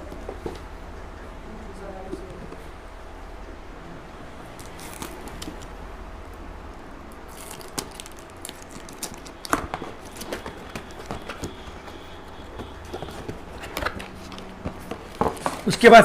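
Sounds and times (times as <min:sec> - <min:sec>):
cardboard and paper rustling: 0:04.6 - 0:05.7, 0:07.3 - 0:15.8.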